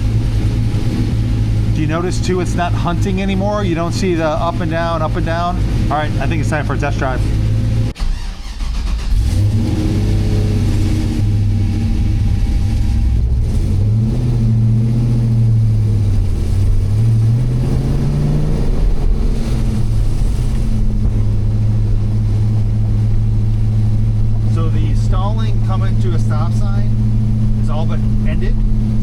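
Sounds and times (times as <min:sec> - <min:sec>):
car engine revving while driving: 0:00.0 - 0:29.0.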